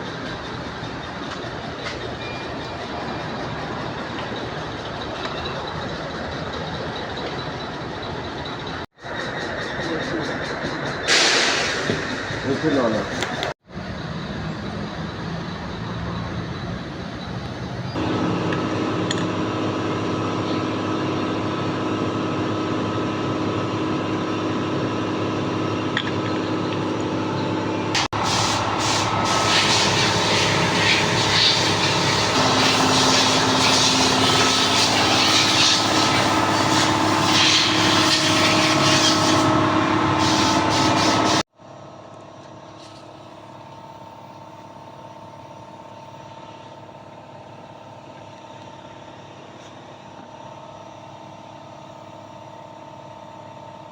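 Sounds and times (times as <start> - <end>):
machinery humming: 0.0 - 41.4
machinery hiss: 11.0 - 13.1, 28.0 - 41.4.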